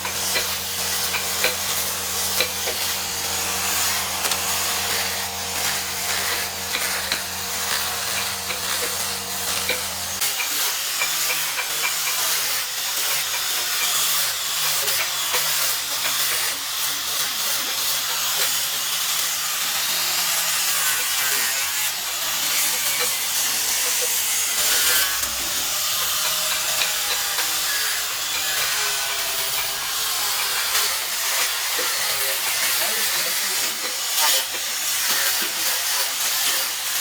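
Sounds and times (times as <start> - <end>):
low motor hum: 0.0 - 10.2
power tool rasping wood: 0.0 - 37.0.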